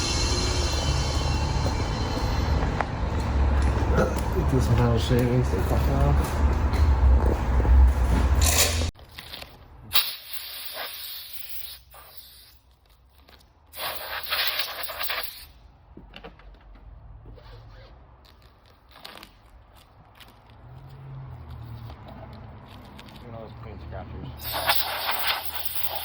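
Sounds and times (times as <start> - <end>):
scratchy rubbing on car paint: 13.8 - 15.6, 24.4 - 26.0.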